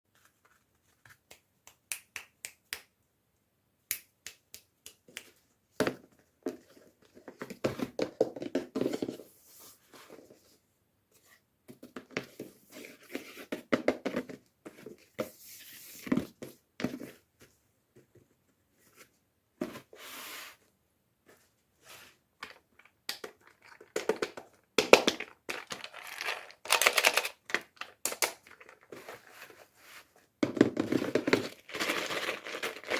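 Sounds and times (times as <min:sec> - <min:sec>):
packaging clicks and snaps: 0:24.9 - 0:28.6
packaging crinkling and tearing: 0:25.2 - 0:28.9, 0:31.3 - 0:32.9.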